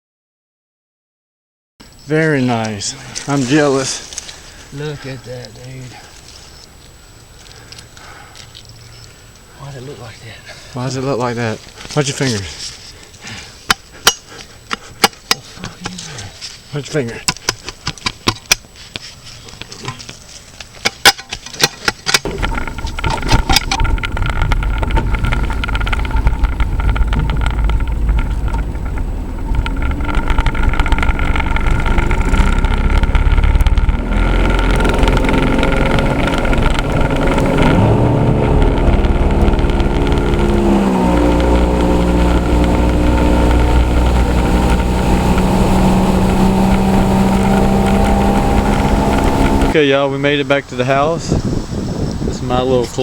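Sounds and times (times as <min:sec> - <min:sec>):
engine running: 0:02.2 - 0:18.6, 0:20.8 - 0:49.8
sharp clicks and knocks: 0:13.6 - 0:16.2, 0:17.2 - 0:49.8.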